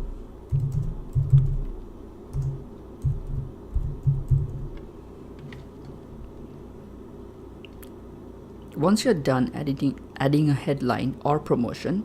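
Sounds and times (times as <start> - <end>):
steady low hum: 0.0 - 12.0
keyboard typing: 0.5 - 4.8.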